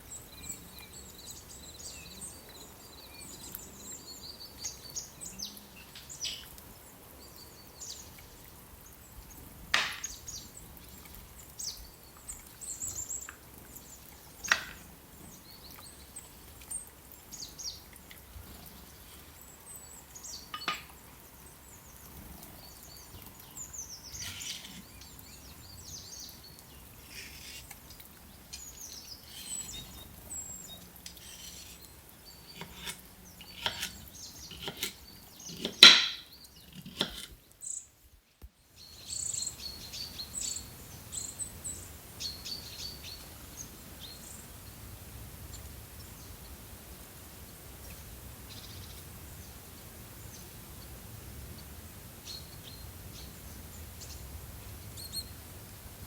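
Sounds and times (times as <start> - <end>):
small birds chirping: 0.0 - 46.7, 47.3 - 55.5
faint steady hiss: 0.0 - 56.0
sharp knocks: 9.8 - 10.1.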